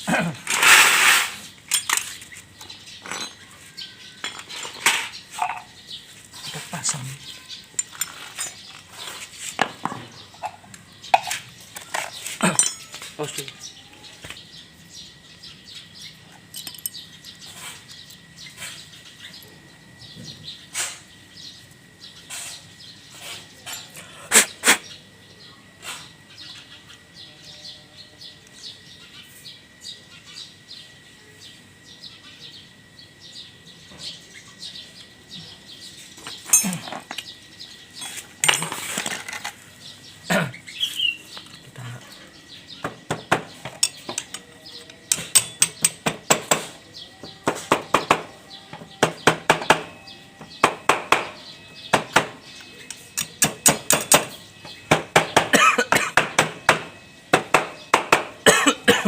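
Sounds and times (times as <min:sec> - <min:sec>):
hand tools clinking on metal: 0:00.1 - 0:03.6, 0:04.2 - 0:05.7, 0:07.7 - 0:09.0, 0:09.6 - 0:13.6, 0:16.4 - 0:17.1, 0:36.2 - 0:37.4, 0:38.0 - 0:39.6, 0:43.6 - 0:46.6, 0:52.6 - 0:54.4.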